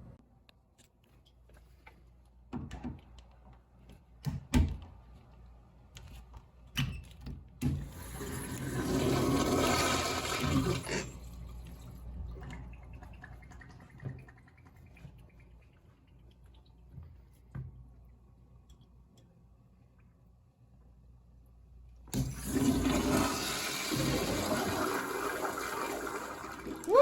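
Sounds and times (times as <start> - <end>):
urinal flushing water rush: 7.8 - 17.0, 22.1 - 27.0.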